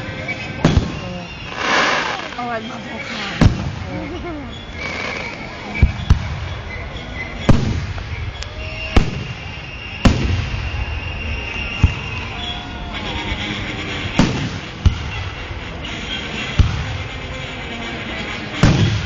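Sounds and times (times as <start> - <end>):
fireworks bursting: 0.0 - 19.0.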